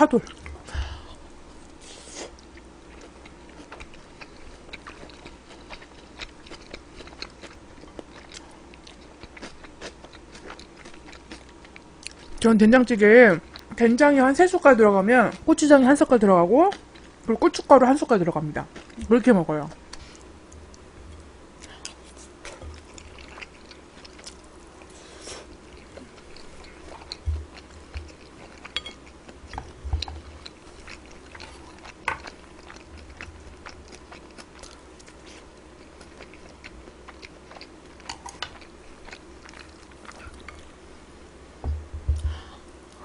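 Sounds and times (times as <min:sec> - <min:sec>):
person chewing food: 0:02.0 - 0:12.4, 0:18.7 - 0:19.0, 0:19.7 - 0:40.8
soft low knocks: 0:41.6 - 0:42.5.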